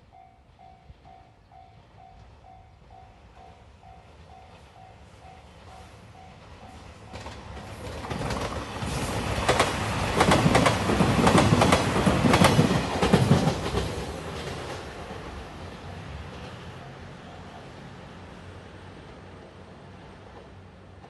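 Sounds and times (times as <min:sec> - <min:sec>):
train passing at speed: 0:00.0 - 0:21.0
wheels clacking over rail joints: 0:07.1 - 0:15.6.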